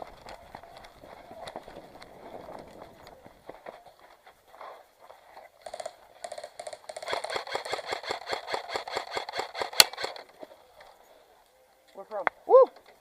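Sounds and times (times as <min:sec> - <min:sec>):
airsoft guns firing: 0:05.6 - 0:10.3.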